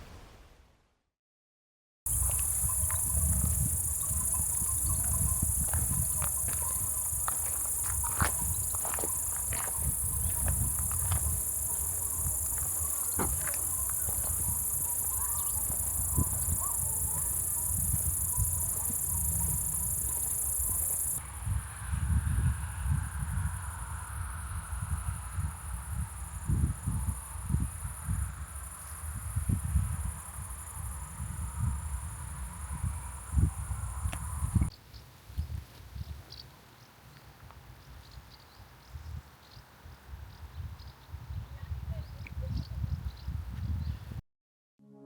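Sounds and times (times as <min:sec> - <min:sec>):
insects chirring: 0:02.1 - 0:34.7
wind rumble on microphone: 0:02.1 - 0:34.7, 0:35.3 - 0:36.4, 0:37.7 - 0:44.2.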